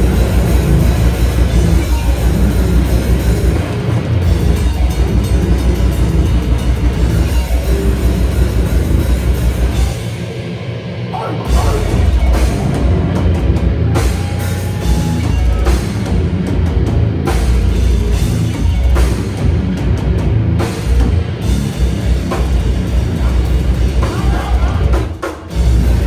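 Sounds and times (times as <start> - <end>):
heavy guitars and bass: 0.0 - 26.0
pounding drum kit: 0.0 - 26.0.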